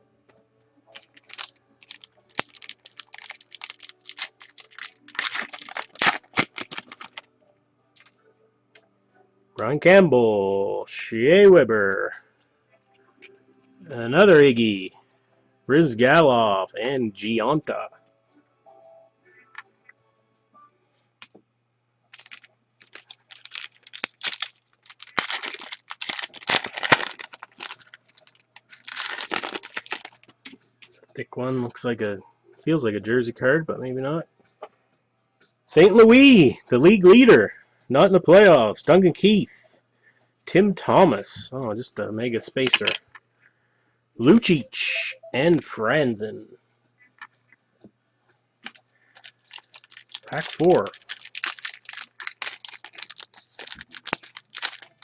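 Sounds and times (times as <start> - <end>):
faint steady hum: 0.0 - 55.0
card pack rustling and crinkling: 0.9 - 7.3, 22.1 - 30.4, 42.7 - 43.0, 48.6 - 55.0.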